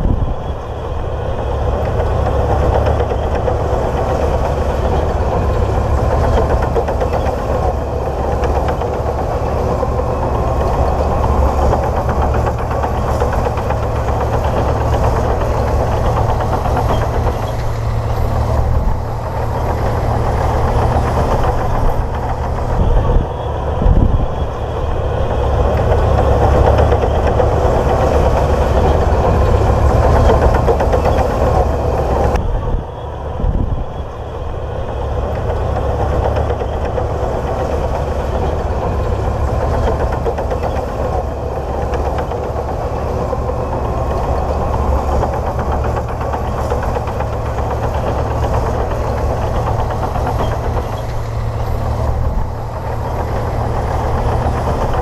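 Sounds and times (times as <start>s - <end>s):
bulldozer diesel engine running: 0.0s - 55.0s.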